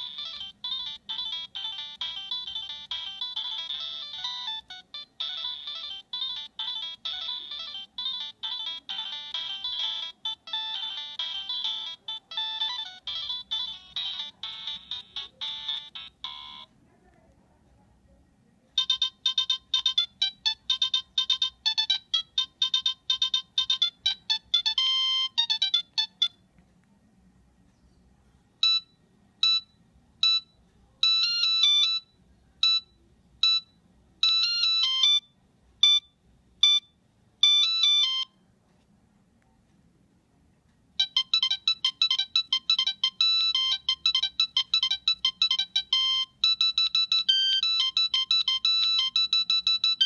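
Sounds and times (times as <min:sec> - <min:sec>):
phone ringtone beeping tunes: 0:00.0 - 0:16.7, 0:18.8 - 0:26.4, 0:28.6 - 0:38.4, 0:41.0 - 0:50.0.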